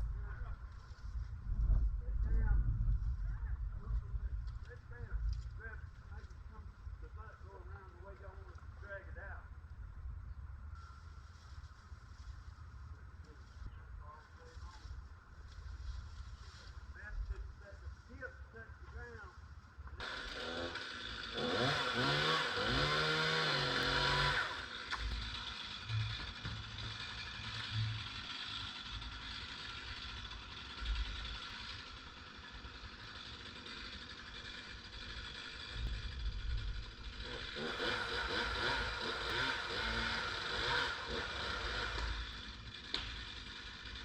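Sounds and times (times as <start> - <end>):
chainsaw revving: 20.0 - 44.0.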